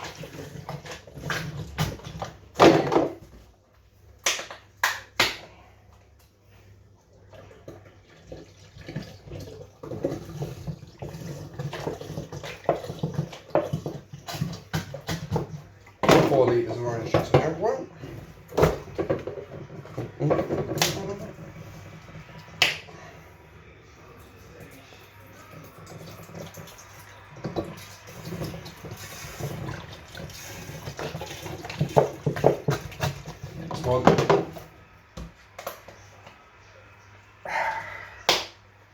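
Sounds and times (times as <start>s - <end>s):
juice glugging while poured: 7.0s - 34.5s.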